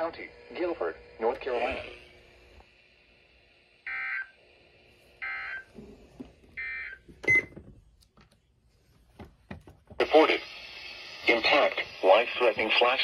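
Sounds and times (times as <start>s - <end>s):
buzzy radio data bursts: 10.0s - 13.0s.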